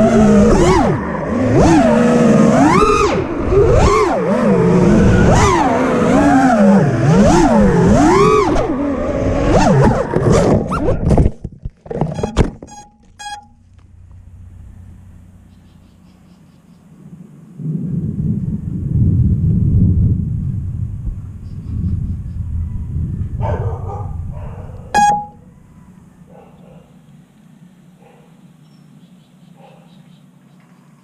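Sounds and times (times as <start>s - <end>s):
quadcopter motors whining: 0.0s - 10.9s
faint low hum: 11.4s - 31.0s.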